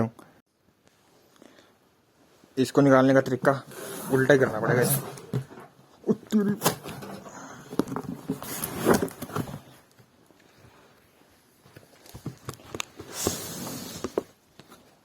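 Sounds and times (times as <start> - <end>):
rustling of box and packing: 3.3 - 15.0.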